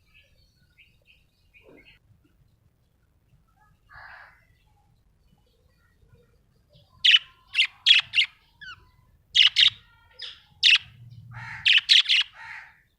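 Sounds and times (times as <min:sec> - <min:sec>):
budgerigar chirping: 0:07.0 - 0:12.7.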